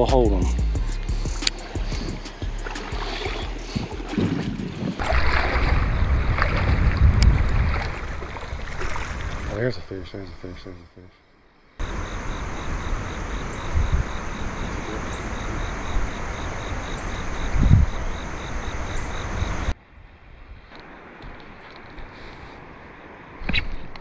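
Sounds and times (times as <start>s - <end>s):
wind buffeting microphone: 2.9s - 9.9s, 11.8s - 22.0s.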